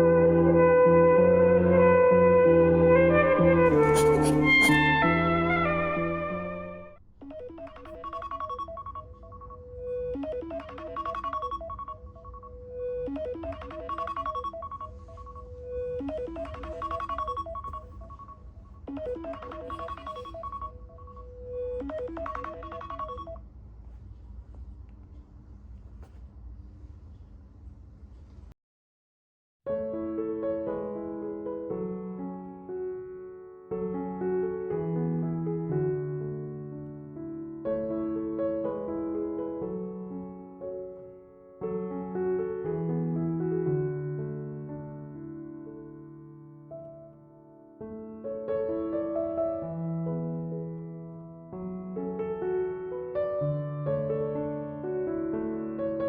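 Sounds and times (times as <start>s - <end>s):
soft piano chords: 0.0s - 23.4s, 29.7s - 56.0s
phone alarm bell-like melody: 7.2s - 23.4s.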